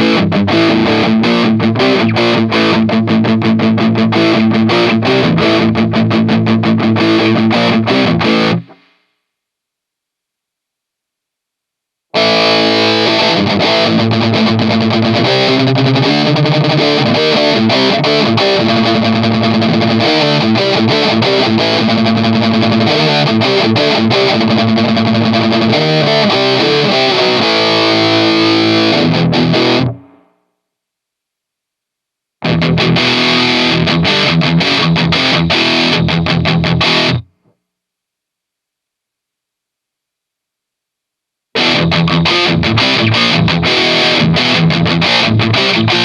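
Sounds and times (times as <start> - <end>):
distorted electric guitar notes: 0.0 - 9.1, 12.1 - 30.4, 32.4 - 37.4, 41.6 - 46.0.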